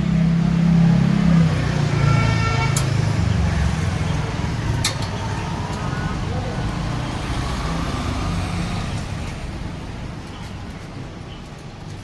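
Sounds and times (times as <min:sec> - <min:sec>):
street traffic: 0:00.0 - 0:12.0
vehicle engine droning: 0:00.0 - 0:12.0
short horn tone: 0:01.9 - 0:03.3.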